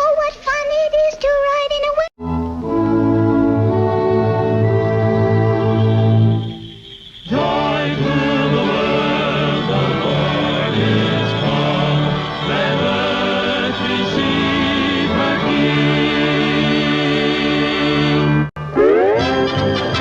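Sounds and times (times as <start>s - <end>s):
orchestral cartoon music: 2.2s - 20.0s
choir singing long notes: 2.3s - 6.6s, 7.2s - 20.0s.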